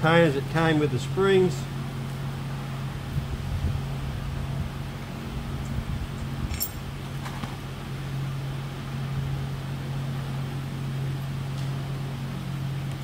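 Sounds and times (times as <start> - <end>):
steady low hum: 0.0 - 13.0
metallic clink: 6.5 - 6.8.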